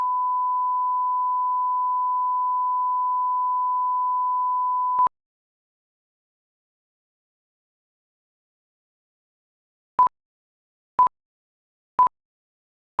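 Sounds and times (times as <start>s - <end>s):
sine test tone: 0.0s - 5.1s.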